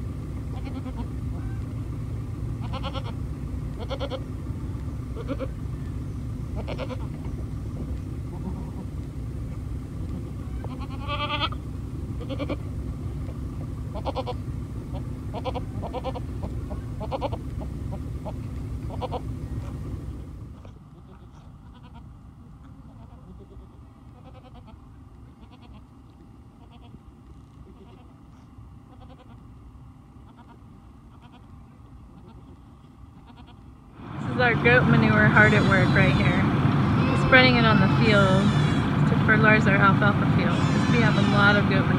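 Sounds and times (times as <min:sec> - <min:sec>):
steady low rumble: 0:00.0 - 0:41.9
goats bleating: 0:00.5 - 0:01.6, 0:02.6 - 0:04.3, 0:05.2 - 0:05.6, 0:06.6 - 0:07.3, 0:08.3 - 0:08.9, 0:10.5 - 0:11.6, 0:12.2 - 0:12.7, 0:13.9 - 0:17.6, 0:18.2 - 0:19.2, 0:21.0 - 0:22.1, 0:22.8 - 0:25.9, 0:26.6 - 0:27.0, 0:27.7 - 0:29.4, 0:30.2 - 0:31.6, 0:33.2 - 0:33.7, 0:40.5 - 0:41.6.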